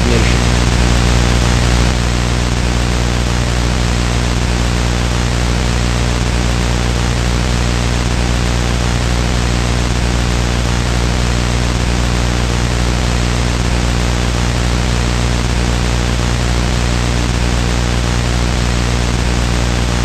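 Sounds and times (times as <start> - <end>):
low electrical hum: 0.0 - 1.8
loud static hiss: 0.0 - 20.0.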